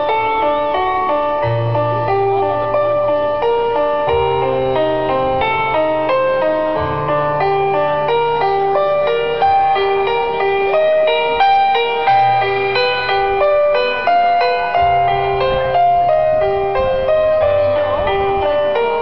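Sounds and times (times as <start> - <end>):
held bass notes: 0.0 - 19.0
keyboard melody: 0.0 - 19.0.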